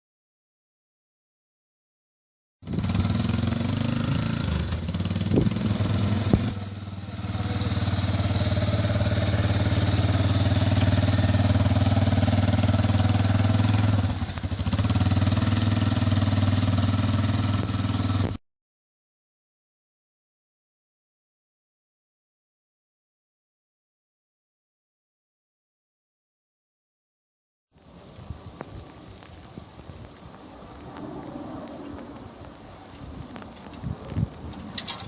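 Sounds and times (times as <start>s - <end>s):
vehicle engine running under load: 2.6s - 18.4s.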